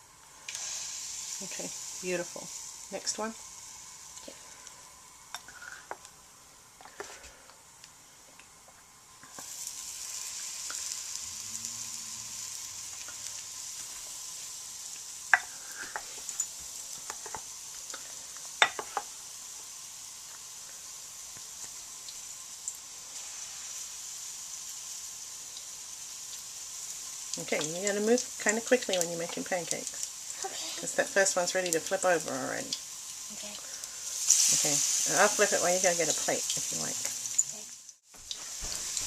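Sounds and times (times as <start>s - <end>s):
batter sizzling on a skillet: 0.0s - 39.0s.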